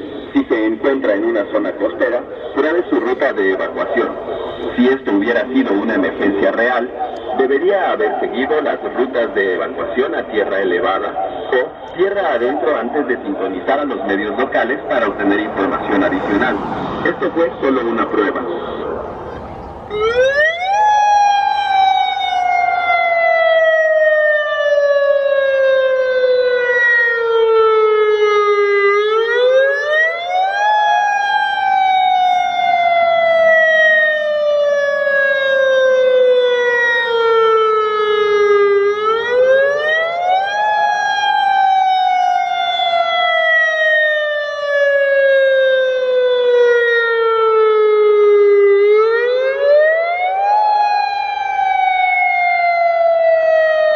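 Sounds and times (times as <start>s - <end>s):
warning siren wailing: 0.0s - 53.9s.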